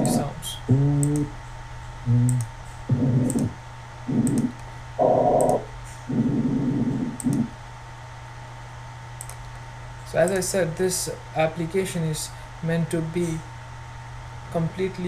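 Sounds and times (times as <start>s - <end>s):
humming tonal breath sounds: 2.0s - 7.6s
light clicks: 9.2s - 10.5s.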